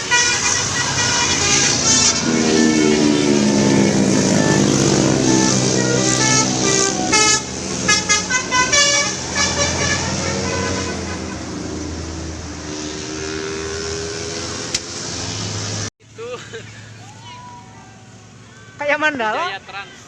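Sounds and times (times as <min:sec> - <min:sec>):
musical bus horn playing a tune: 0:00.0 - 0:12.0
bus engine running: 0:00.0 - 0:13.0.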